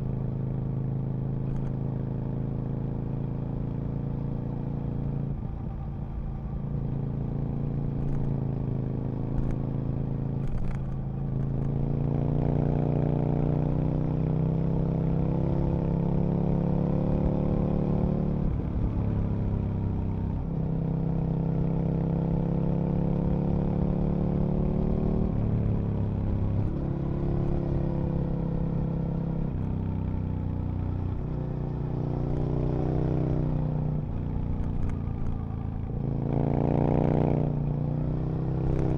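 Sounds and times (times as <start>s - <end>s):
motorcycle engine revving: 31.4s - 38.9s.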